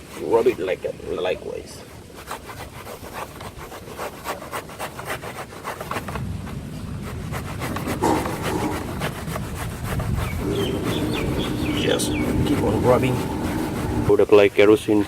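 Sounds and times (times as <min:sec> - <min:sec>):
rag rubbing on chain: 0:06.9 - 0:14.2
low rumble: 0:07.3 - 0:14.1.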